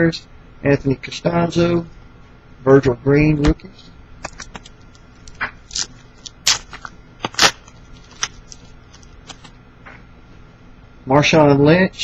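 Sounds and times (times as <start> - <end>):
cards being handled: 4.2 - 9.6
wrapper crinkling and tearing: 4.2 - 9.6.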